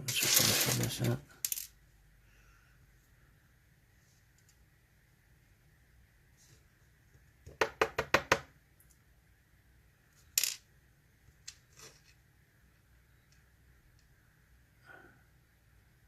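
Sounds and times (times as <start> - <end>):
metal pins clinking on hard surface: 0.0 - 1.8.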